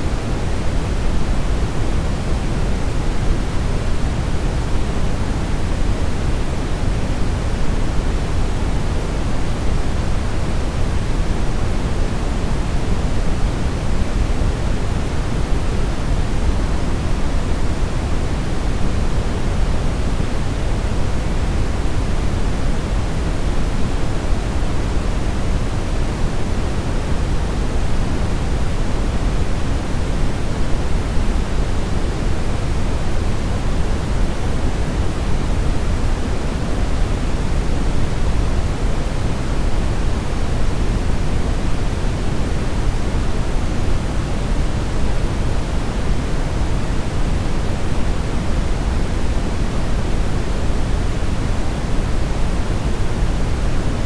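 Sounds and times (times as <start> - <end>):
brown noise hiss: 0.0 - 54.0.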